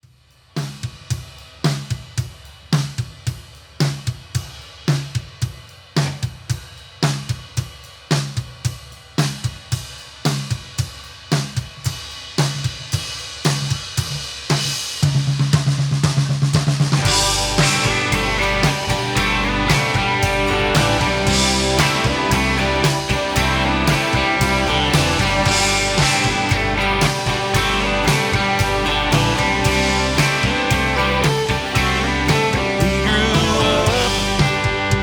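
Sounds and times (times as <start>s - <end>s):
drum kit beat: 0.0s - 35.0s
rock band with guitars and bass: 16.2s - 35.0s.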